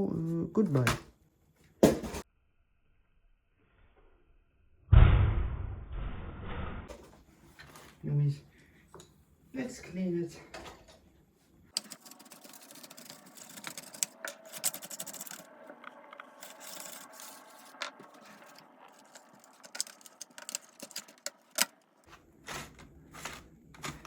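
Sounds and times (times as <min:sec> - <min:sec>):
rubbing and scraping on plastic: 0:11.8 - 0:24.0.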